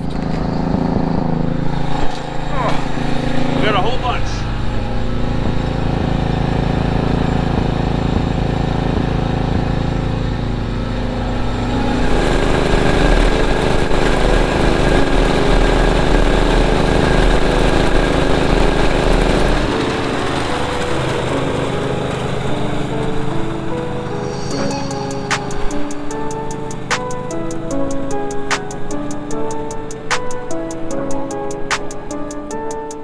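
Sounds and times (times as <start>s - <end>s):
rushing noise: 24.0s - 32.1s.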